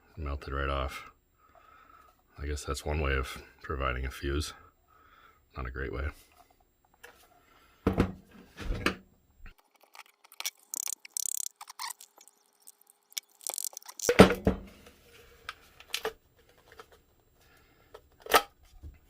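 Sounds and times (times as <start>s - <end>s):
plastic crinkling and tearing: 9.6s - 14.2s.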